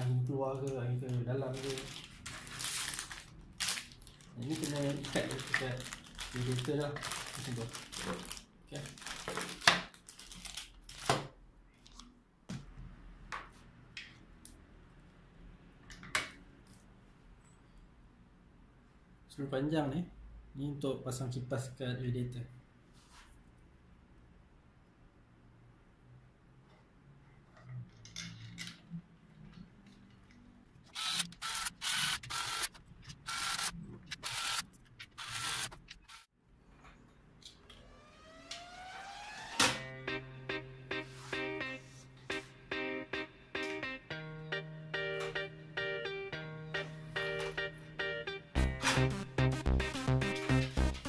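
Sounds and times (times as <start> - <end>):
electric screwdriver whirring: 30.9 - 34.6, 35.2 - 36.3.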